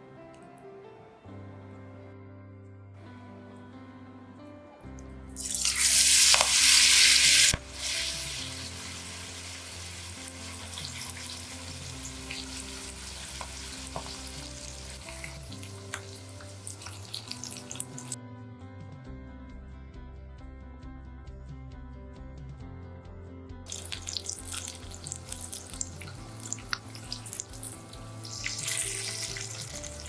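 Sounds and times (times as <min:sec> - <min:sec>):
food sizzling in hot oil: 0:05.4 - 0:18.2, 0:23.7 - 0:30.0
oil crackling: 0:05.4 - 0:18.2, 0:23.7 - 0:30.0.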